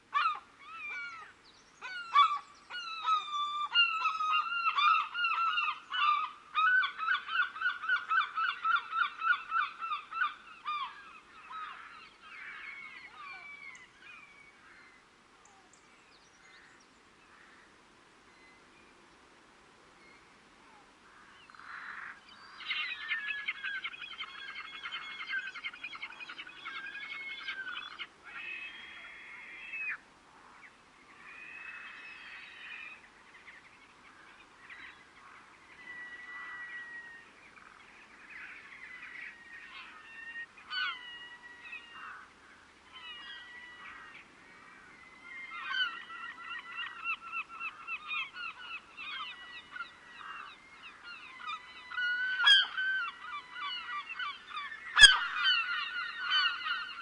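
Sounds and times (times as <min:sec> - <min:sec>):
seagulls calling: 0:00.1 - 0:15.0, 0:21.2 - 0:30.0, 0:34.1 - 0:57.0.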